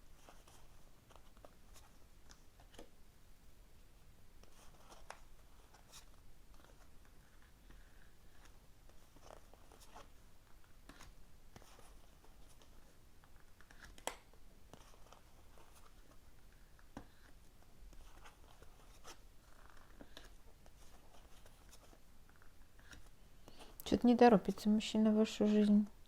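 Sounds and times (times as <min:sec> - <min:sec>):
cards rustling and clicking: 0:04.5 - 0:23.8.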